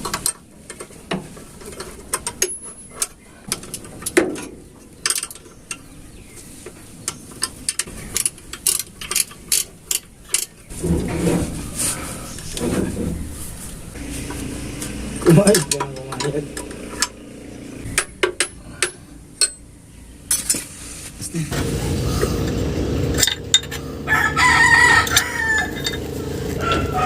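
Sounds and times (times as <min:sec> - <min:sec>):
loud rough noise: 0:14.0 - 0:17.9, 0:21.4 - 0:27.0.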